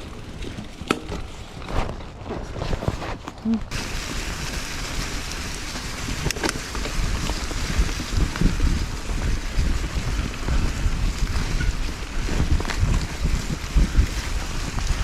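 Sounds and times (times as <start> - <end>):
bike rattling over rough ground: 0.0 - 15.0
steady rushing hiss: 3.7 - 15.0.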